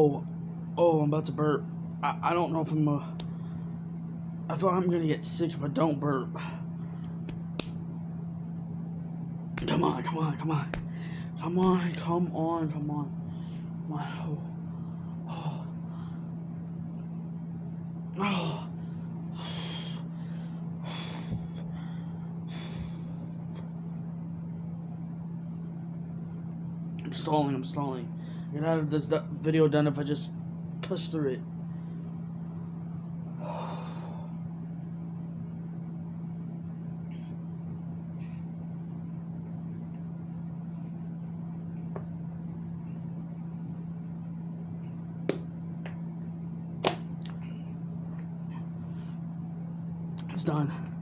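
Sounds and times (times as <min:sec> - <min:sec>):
low hum: 0:00.0 - 0:27.2
person breathing heavily: 0:10.9 - 0:11.4, 0:18.2 - 0:23.3.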